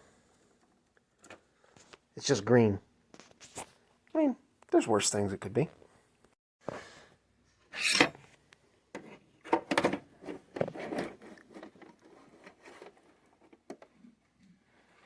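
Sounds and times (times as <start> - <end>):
small clicks and scrapes: 7.8 - 15.0.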